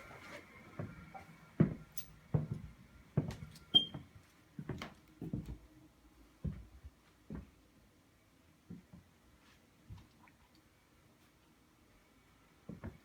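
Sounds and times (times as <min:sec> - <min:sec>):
short squeak: 0:03.7 - 0:04.0.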